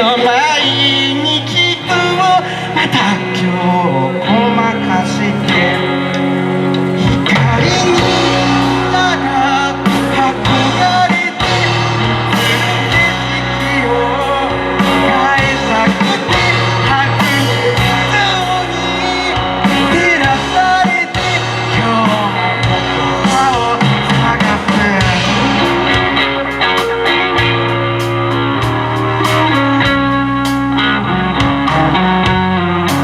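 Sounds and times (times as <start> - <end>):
electric guitar: 0.0 - 33.0
person singing: 0.0 - 33.0
drum beat: 9.8 - 13.8, 14.8 - 18.6, 19.4 - 33.0.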